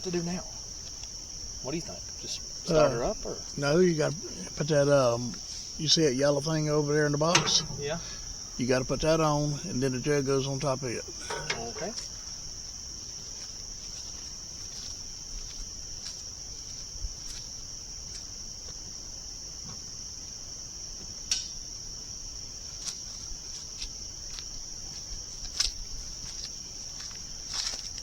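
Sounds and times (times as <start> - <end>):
crickets chirring: 0.0 - 28.0
light clicks and knocks: 7.2 - 12.2.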